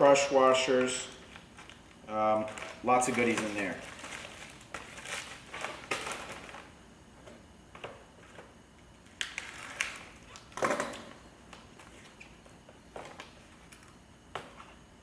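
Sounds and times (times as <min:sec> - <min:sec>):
packaging rustling: 0:01.3 - 0:06.7.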